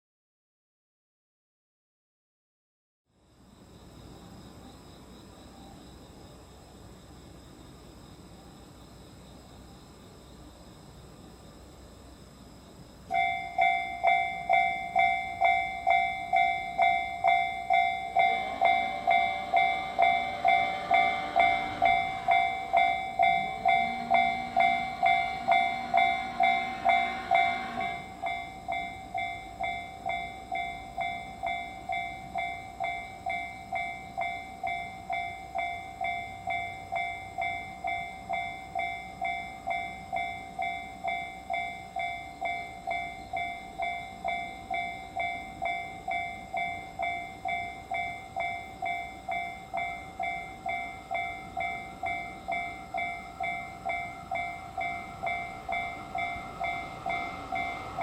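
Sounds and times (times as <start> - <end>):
railroad crossing bell ringing: 13.1 - 58.0.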